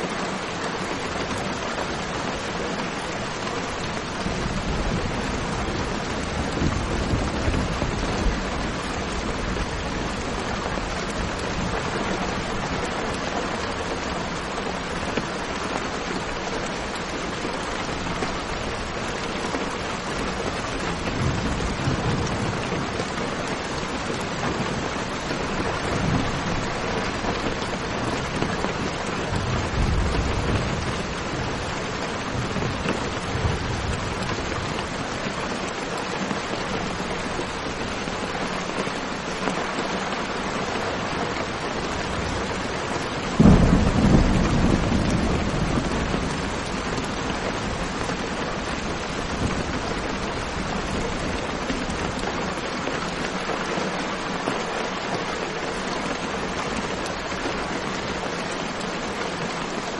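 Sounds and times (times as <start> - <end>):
dense rainfall: 0.0 - 59.9
thunder rumbles: 2.5 - 12.7, 41.9 - 51.2.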